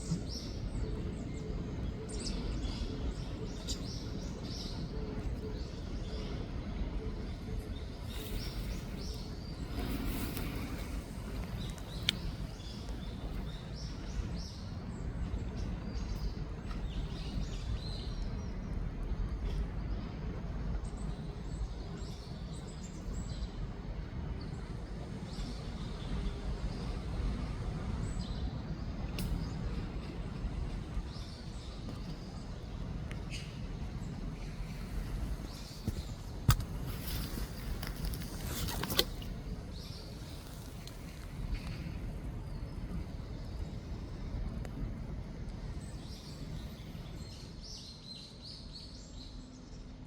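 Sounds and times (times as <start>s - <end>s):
small birds chirping: 0.0s - 18.6s, 28.0s - 44.9s
low outdoor rumble: 0.0s - 50.0s.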